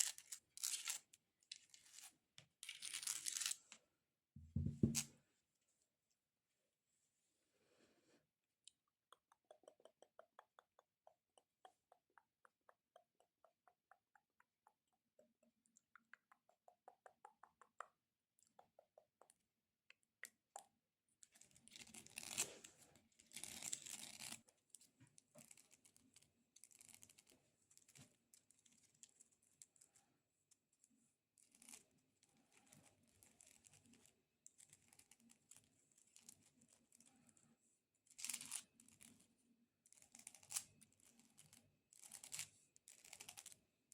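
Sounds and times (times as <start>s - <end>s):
nails tapping on a figurine: 8.7s - 20.6s
nails scratching and tapping: 8.7s - 20.7s.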